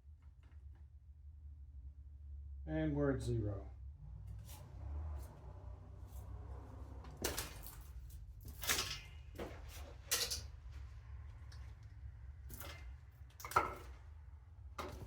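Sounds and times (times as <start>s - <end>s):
steady low hum: 0.0s - 15.0s
tools clicking and clattering: 7.1s - 10.8s, 12.5s - 14.0s.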